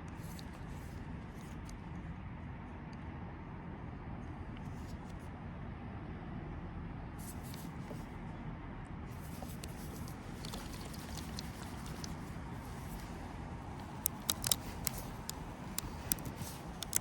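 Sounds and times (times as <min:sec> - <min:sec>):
light clicks and rustles: 0:00.0 - 0:01.9, 0:07.2 - 0:08.2, 0:09.1 - 0:17.0.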